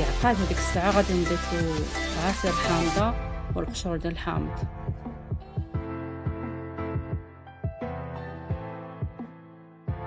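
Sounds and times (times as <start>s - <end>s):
deep thumping beat: 2.7s - 7.3s.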